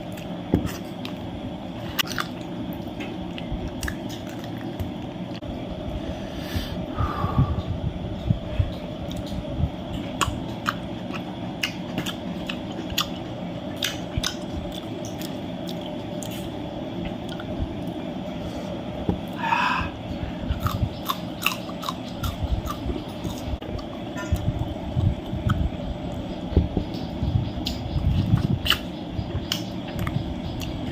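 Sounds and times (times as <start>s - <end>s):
person chewing crunchy food: 0.0s - 5.4s, 10.0s - 18.0s, 19.2s - 25.7s
low background rumble: 0.0s - 30.9s.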